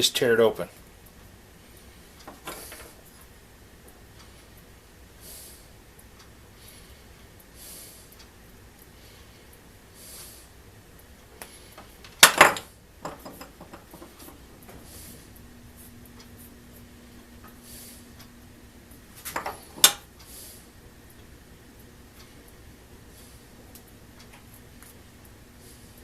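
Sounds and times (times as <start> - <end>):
soft breaths: 0.7 - 26.0.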